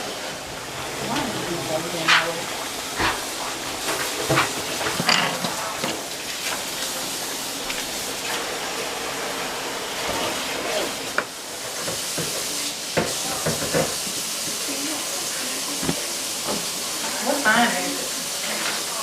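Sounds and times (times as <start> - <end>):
food sizzling in a pan: 0.0 - 19.0
utensils clinking: 3.0 - 6.7.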